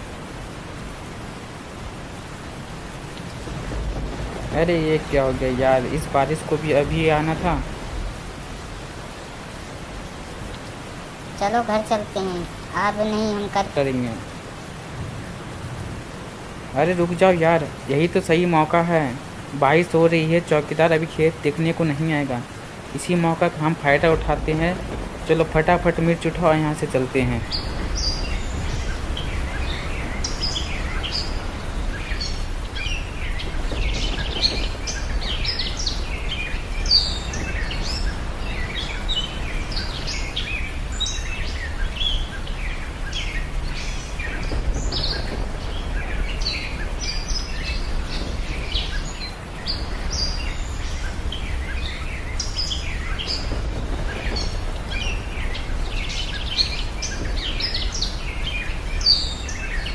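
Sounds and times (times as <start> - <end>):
low outdoor rumble: 0.0 - 59.9
small birds chirping: 0.0 - 59.9.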